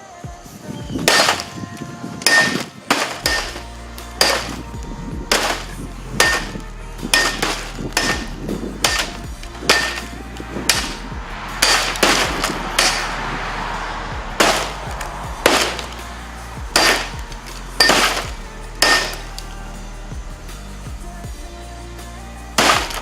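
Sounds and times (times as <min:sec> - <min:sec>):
music: 0:00.0 - 0:23.0
heavy blows smashing a tv: 0:01.0 - 0:13.6, 0:14.2 - 0:19.4, 0:22.6 - 0:23.0.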